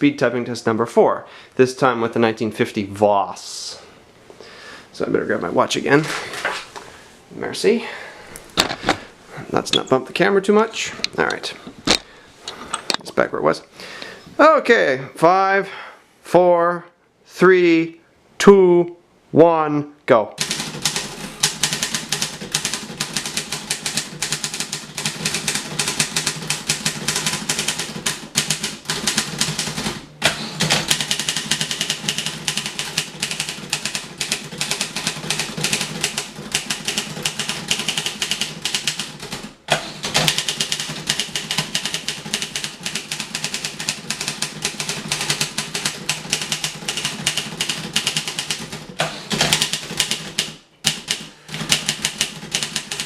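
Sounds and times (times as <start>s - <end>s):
typewriter keystrokes clattering: 20.4s - 53.0s.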